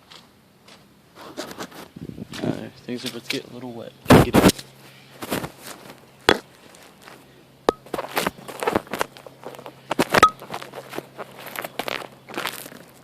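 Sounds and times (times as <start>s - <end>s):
crunching footsteps: 4.1s - 13.0s.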